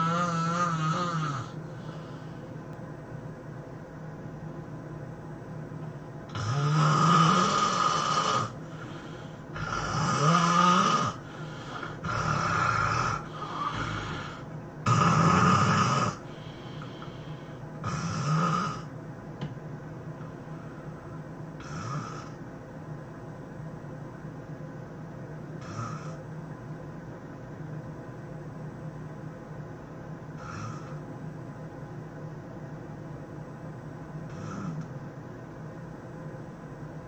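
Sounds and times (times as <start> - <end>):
person snoring loudly: 0.0 - 2.1, 6.3 - 16.3, 17.8 - 18.9, 21.6 - 22.4, 25.6 - 26.2, 30.4 - 31.0, 34.3 - 34.9.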